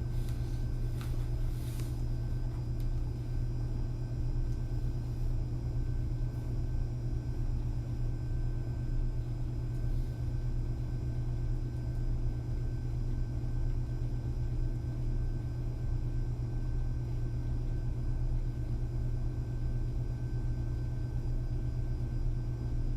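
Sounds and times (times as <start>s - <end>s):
soft movement sounds: 0.0s - 3.4s
low hum and rumble: 0.0s - 22.9s.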